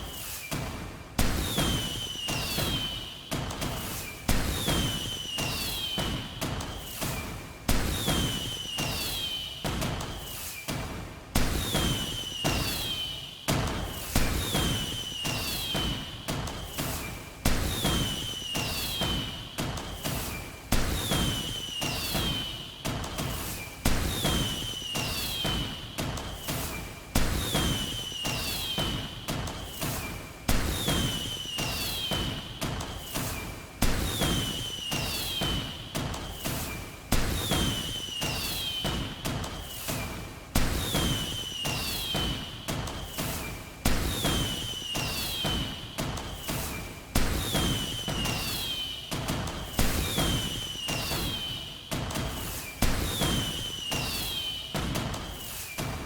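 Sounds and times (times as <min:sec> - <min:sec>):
fireworks banging: 0:13.7 - 0:15.9, 0:23.2 - 0:25.7, 0:26.3 - 0:56.0
falling high whistling tone: 0:44.5 - 0:45.6, 0:47.5 - 0:49.0, 0:53.2 - 0:54.6.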